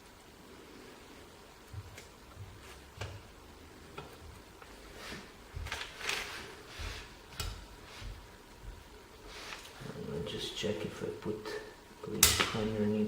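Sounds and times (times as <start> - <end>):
scraping rustle: 4.6 - 8.3, 9.2 - 10.0.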